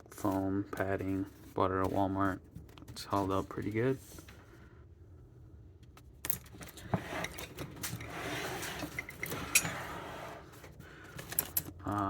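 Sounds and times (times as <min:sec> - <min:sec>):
tools rustling and clinking: 0:06.0 - 0:12.0.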